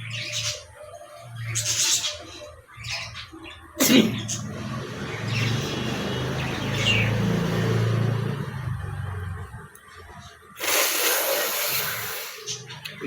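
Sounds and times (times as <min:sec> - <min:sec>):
person blowing nose: 0:10.6 - 0:12.4.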